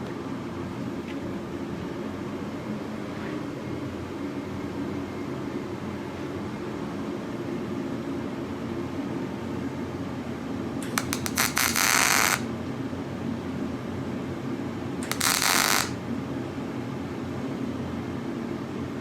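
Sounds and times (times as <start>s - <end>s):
welding arc crackling: 10.9s - 12.4s, 15.0s - 16.0s.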